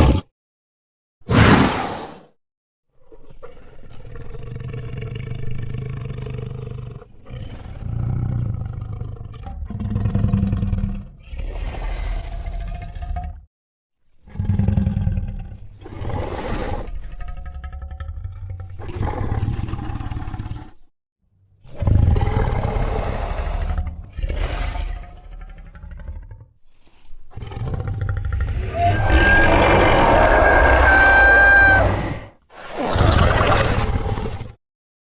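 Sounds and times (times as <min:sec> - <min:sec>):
monster roars: 0:27.4 - 0:34.2.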